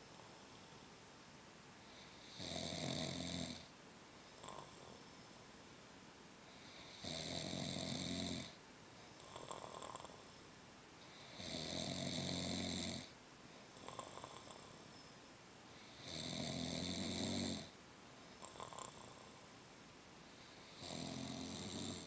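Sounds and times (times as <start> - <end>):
soft breathing: 1.8 - 2.4, 20.2 - 20.8
deep snoring: 2.0 - 3.7, 4.4 - 4.9, 6.6 - 8.6, 9.2 - 10.2, 11.1 - 13.1, 13.8 - 14.7, 15.8 - 17.7, 18.4 - 19.4, 20.5 - 22.0.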